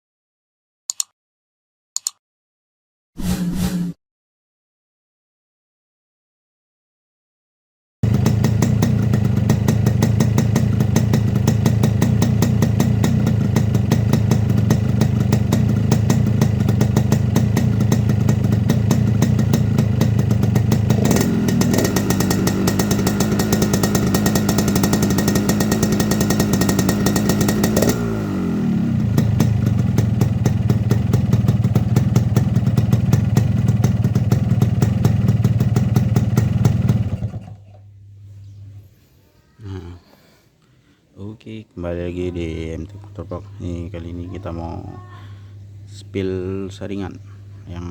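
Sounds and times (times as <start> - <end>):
two-stroke motorcycle engine growl: 8.0 - 37.9.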